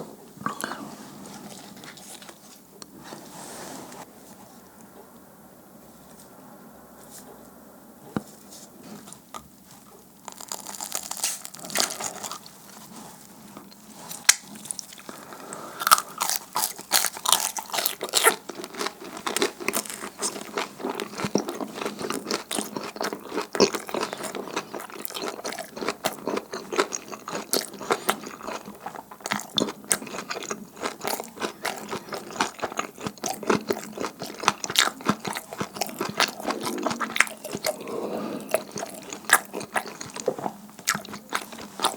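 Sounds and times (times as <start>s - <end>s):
crisp crackly chewing: 9.3s - 41.9s.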